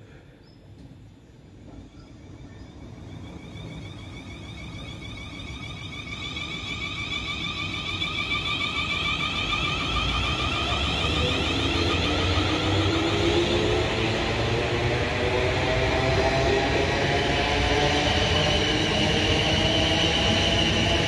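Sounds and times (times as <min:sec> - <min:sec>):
train low rumble: 0:00.0 - 0:21.0
train whine: 0:00.0 - 0:21.0.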